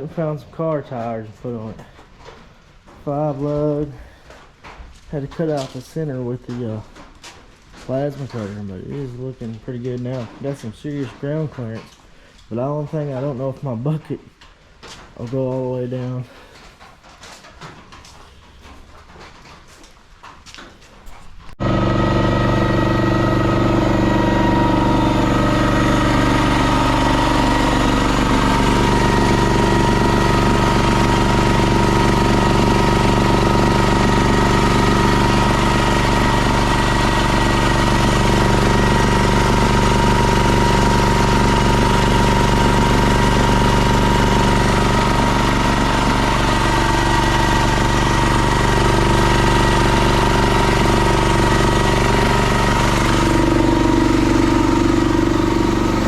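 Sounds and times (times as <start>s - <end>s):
engine running steadily: 21.6s - 56.0s.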